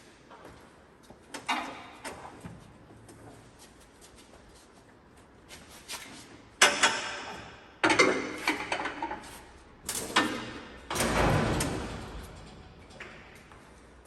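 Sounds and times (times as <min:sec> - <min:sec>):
loud metal clanks: 0:10.1 - 0:13.4.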